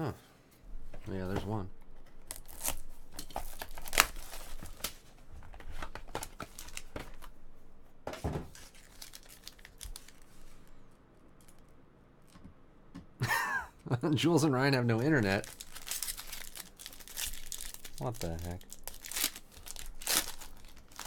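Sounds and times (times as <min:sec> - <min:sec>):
cards and packaging rustling: 0:01.1 - 0:07.4, 0:08.2 - 0:10.8, 0:15.0 - 0:21.0
wrapper tearing and crinkling: 0:02.2 - 0:05.0, 0:05.8 - 0:07.3, 0:08.5 - 0:10.6, 0:15.1 - 0:21.0.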